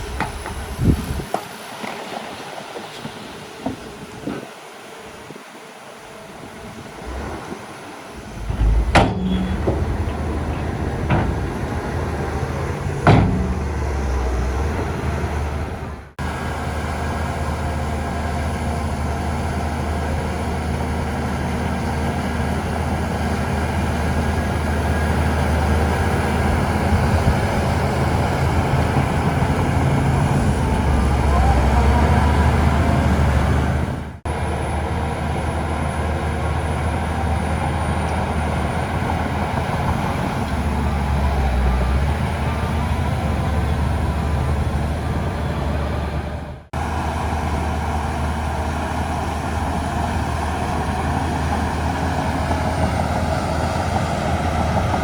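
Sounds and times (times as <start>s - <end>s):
diesel engine running: 6.6s - 55.0s
sharp metal clanks: 8.2s - 14.7s.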